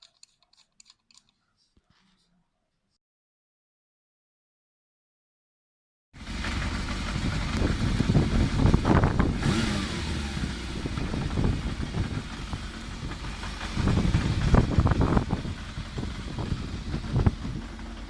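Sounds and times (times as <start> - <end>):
motorcycle engine revving: 6.2 - 18.0.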